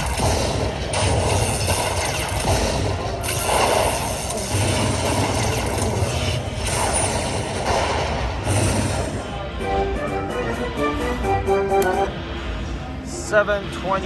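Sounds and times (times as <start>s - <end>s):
slot machine electronic game sounds: 0.0s - 7.7s.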